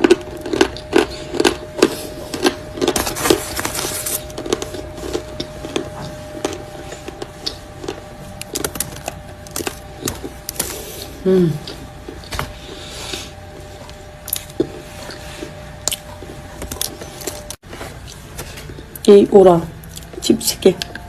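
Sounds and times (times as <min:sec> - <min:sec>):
crunching chalk being chewed: 0:00.0 - 0:19.1.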